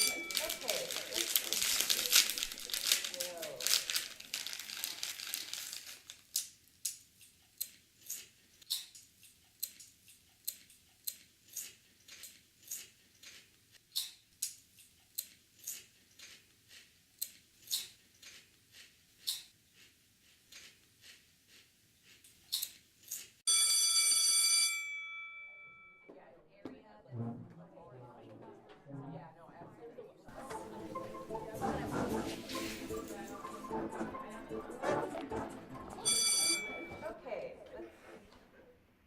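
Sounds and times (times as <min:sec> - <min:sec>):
loud multi-tone ring: 0:00.0 - 0:00.6, 0:23.5 - 0:26.1, 0:36.0 - 0:37.0.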